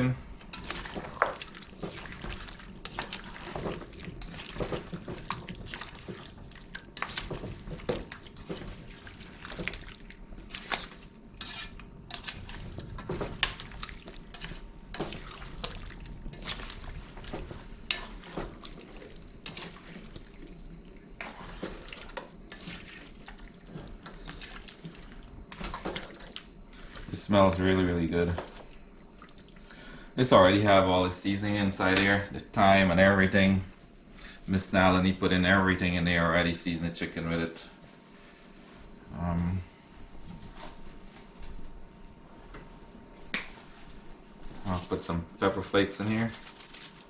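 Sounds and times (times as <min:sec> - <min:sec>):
chicken sizzling in a pot: 0:00.0 - 0:29.9.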